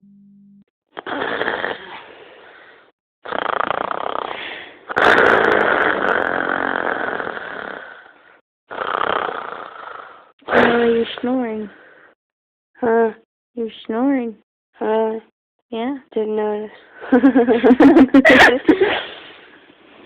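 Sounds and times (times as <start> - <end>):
person snoring: 1.0 - 10.8.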